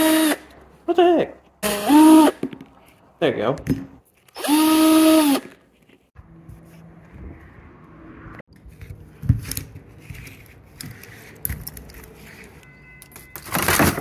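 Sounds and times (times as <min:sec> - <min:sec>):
metal parts and tools clinking: 0:08.6 - 0:14.0.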